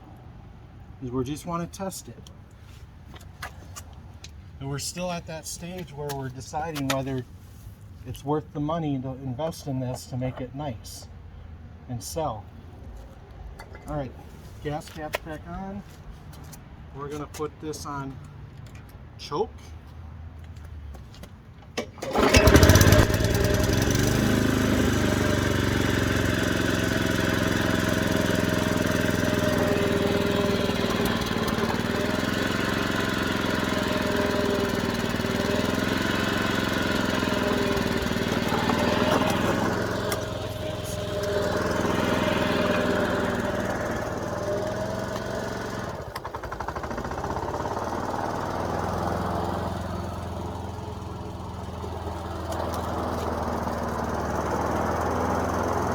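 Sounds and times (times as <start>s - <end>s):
lawn mower engine running: 21.8s - 55.9s.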